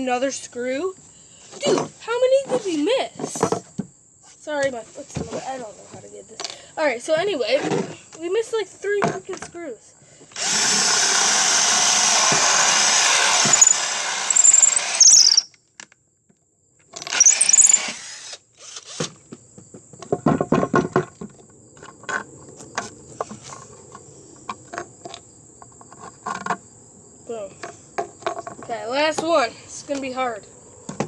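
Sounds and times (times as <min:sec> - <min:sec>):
crickets chirping: 0:00.0 - 0:31.0
electric drill boring: 0:10.3 - 0:15.5, 0:17.0 - 0:19.0
drill bit squealing: 0:10.4 - 0:15.5, 0:17.1 - 0:18.9.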